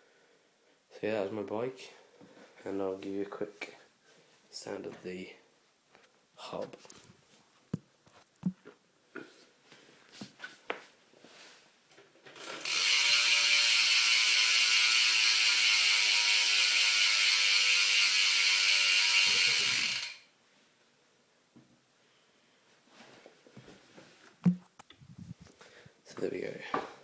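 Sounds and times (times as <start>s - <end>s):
bike hub ratcheting buzz: 12.4s - 20.3s.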